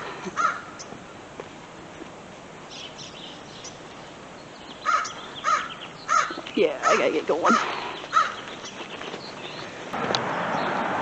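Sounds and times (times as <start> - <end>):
small birds chirping: 0.0 - 1.0, 2.6 - 10.9
crows cawing: 0.3 - 0.9, 4.8 - 8.6.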